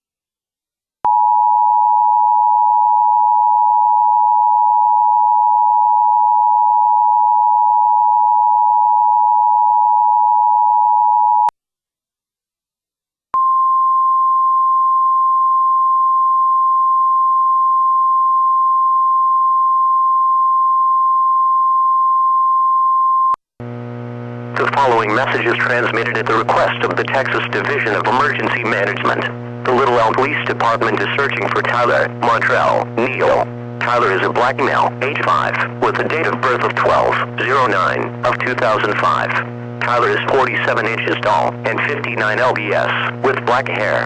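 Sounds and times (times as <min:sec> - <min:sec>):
two-tone alarm tone: 0:01.1 - 0:11.5.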